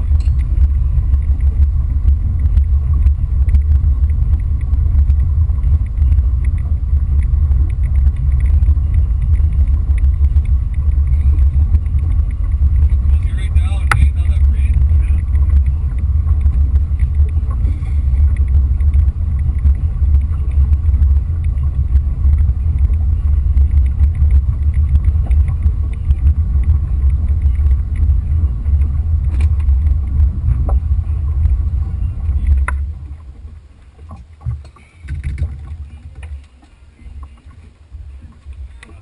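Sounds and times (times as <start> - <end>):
wind buffeting microphone: 0.0 - 39.0.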